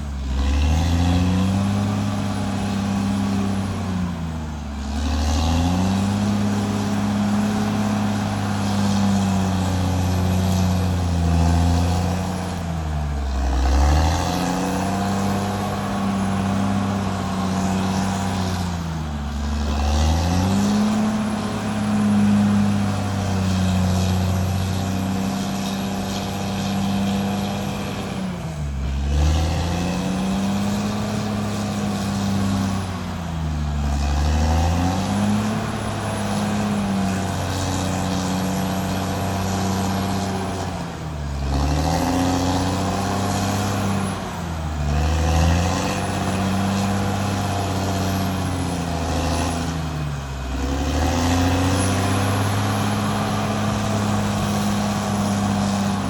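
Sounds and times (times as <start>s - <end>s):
bulldozer diesel engine under load: 0.0s - 56.0s.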